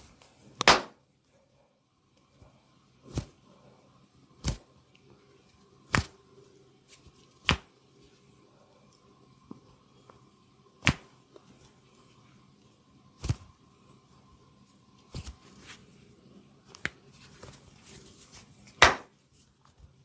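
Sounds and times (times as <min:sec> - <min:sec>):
smacking massage strikes: 0:00.6 - 0:01.0, 0:10.8 - 0:11.1, 0:18.8 - 0:19.1.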